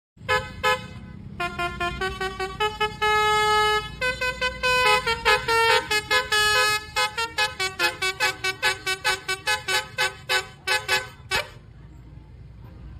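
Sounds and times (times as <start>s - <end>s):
bus horn playing a tune: 0.2s - 11.7s
low engine rumble: 0.2s - 12.9s.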